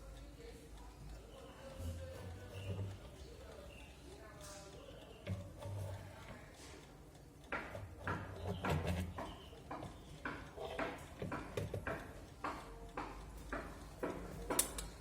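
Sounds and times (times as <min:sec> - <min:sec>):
alarm clock clicks and knocks: 0:07.4 - 0:15.0.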